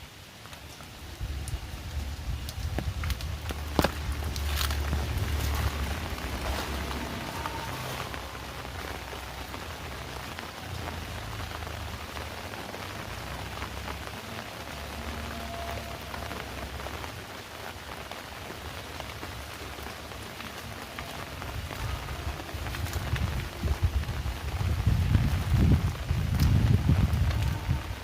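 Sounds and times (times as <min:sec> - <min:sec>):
heavy rain falling: 0:00.0 - 0:28.0
sharp water drips: 0:00.0 - 0:28.0
low rumble: 0:01.0 - 0:12.1.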